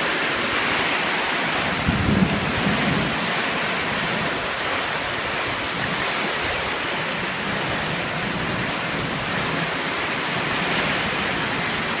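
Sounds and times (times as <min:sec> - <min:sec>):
storm wind rushing: 0:01.4 - 0:06.8.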